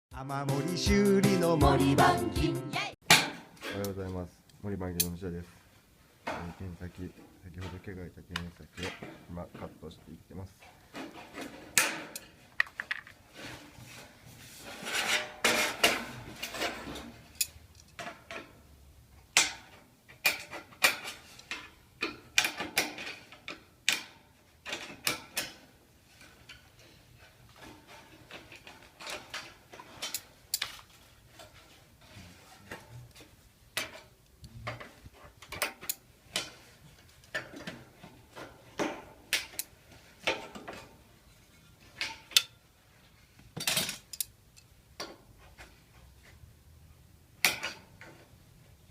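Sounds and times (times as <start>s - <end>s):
metal scraping: 13.2s - 17.6s.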